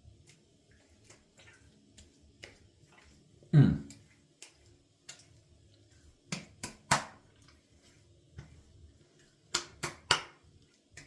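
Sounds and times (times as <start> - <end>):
hands slapping face: 6.3 - 7.2, 9.5 - 10.4.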